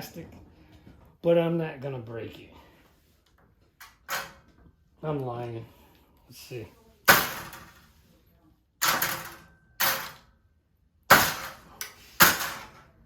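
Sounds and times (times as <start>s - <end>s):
blows cracking on thin panel: 7.1s - 7.9s, 11.1s - 12.9s.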